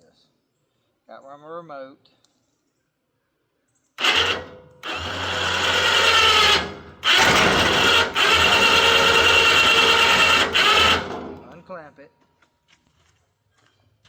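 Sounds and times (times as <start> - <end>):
electric winch motor whine: 4.0 - 11.6.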